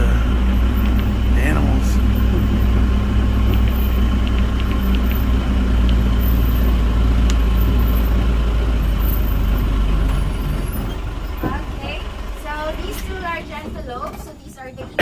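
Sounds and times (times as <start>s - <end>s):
vehicle engine idling: 0.0s - 15.0s.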